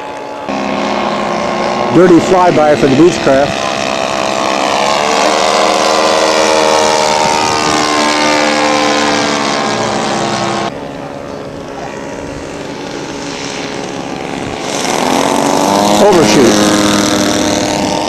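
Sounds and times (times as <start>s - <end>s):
model airplane engine flyby: 0.0s - 18.0s
steady engine drone: 0.0s - 18.0s.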